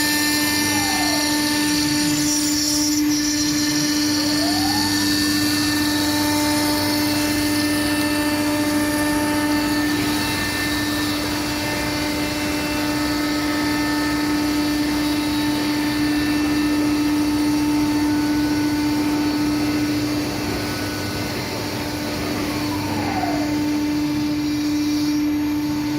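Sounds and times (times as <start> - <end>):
router spindle cutting stone: 0.0 - 25.9
falling whine: 17.2 - 25.9.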